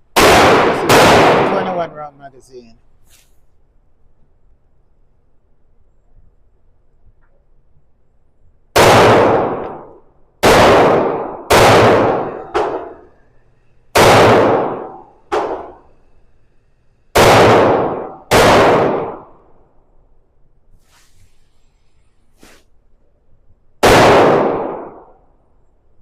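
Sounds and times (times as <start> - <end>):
pistol shots: 0.1 - 1.9, 8.7 - 13.3, 13.9 - 16.0, 17.1 - 19.4, 23.8 - 25.2.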